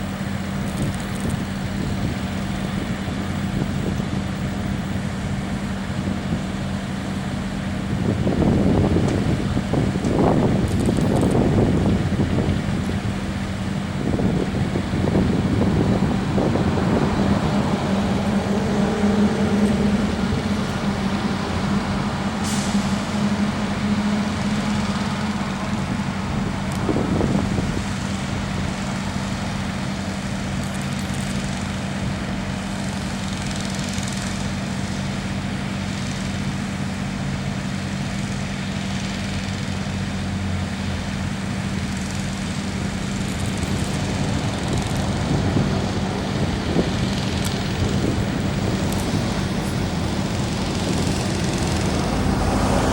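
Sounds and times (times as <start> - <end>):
diesel truck engines droning: 0.0 - 52.9
freeway traffic: 0.0 - 52.9
brief hiss: 22.4 - 23.2.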